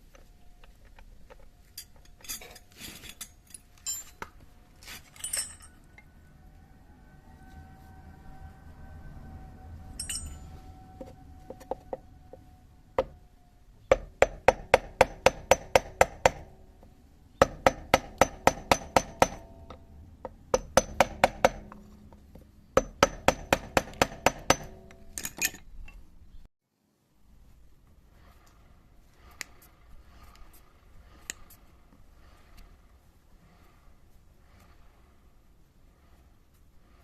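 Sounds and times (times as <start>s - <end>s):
hammer tapping on metal: 13.9s - 16.5s, 17.4s - 21.8s, 22.8s - 25.0s.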